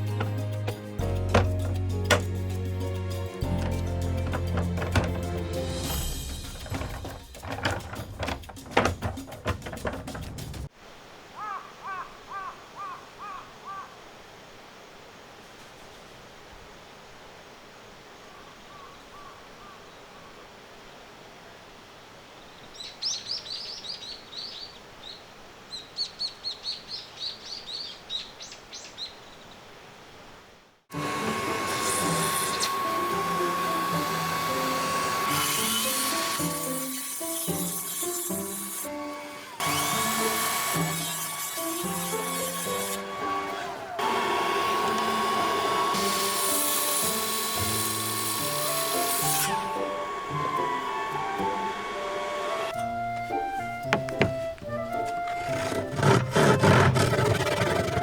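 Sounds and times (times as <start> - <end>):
slow melodic background music: 0.0 - 7.4, 30.9 - 56.4
steady outdoor hiss: 0.0 - 31.0
small bird chirping: 22.5 - 29.6
power tool running: 30.9 - 52.8, 55.5 - 58.0.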